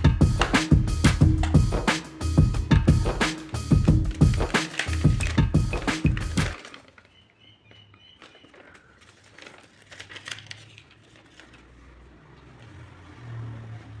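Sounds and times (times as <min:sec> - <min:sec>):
faint crinkling: 0:04.2 - 0:12.2.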